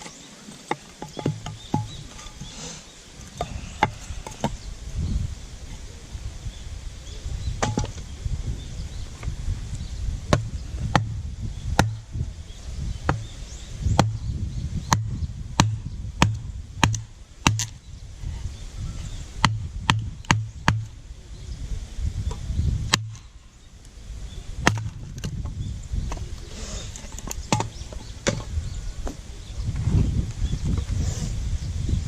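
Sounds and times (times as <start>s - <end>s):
firewood splitting knocks: 0.0s - 2.5s, 7.6s - 8.1s, 10.3s - 12.0s, 13.0s - 13.3s, 13.9s - 14.3s, 14.9s - 17.8s, 19.4s - 21.0s, 22.9s - 23.2s, 24.6s - 26.3s, 27.1s - 29.2s.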